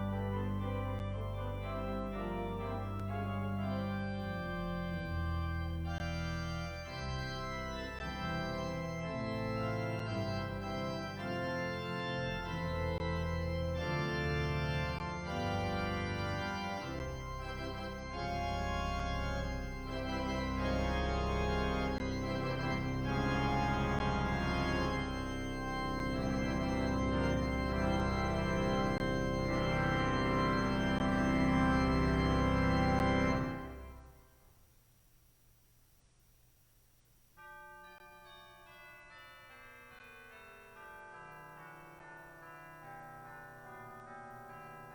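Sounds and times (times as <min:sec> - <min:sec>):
organ playing slow chords: 0:00.0 - 0:34.2.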